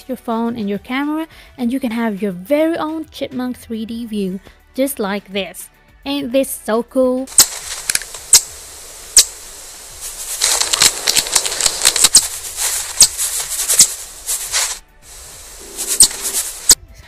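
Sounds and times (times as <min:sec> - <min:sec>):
scratchy rustling with crackles: 0:07.3 - 0:16.8.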